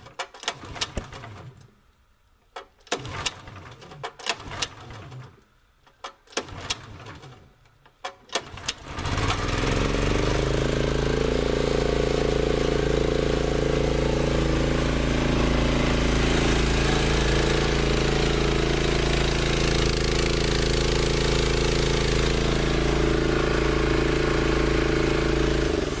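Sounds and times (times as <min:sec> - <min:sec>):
air compressor engine chugging: 0:08.9 - 0:26.0.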